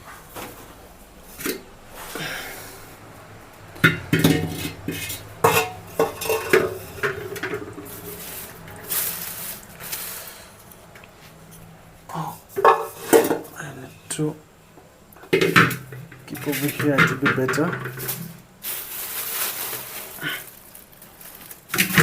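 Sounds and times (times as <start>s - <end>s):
metal pots and utensils clanking: 3.8s - 10.2s, 12.5s - 13.6s, 15.3s - 18.4s, 21.7s - 22.0s.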